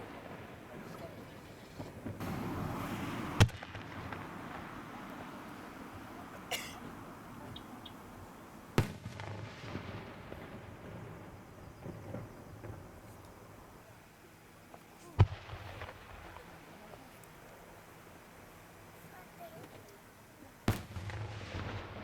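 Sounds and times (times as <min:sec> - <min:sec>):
rolling echo: 0:00.0 - 0:13.6, 0:20.7 - 0:22.0
fireworks bursting: 0:00.0 - 0:22.0
fireworks crackle: 0:00.0 - 0:22.0.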